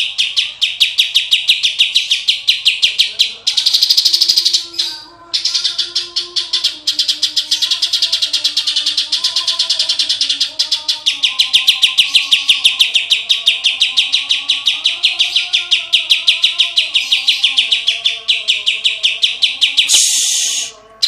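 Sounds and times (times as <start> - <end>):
bird singing rapid high notes: 0.1 - 20.8
brief hiss: 19.9 - 20.7.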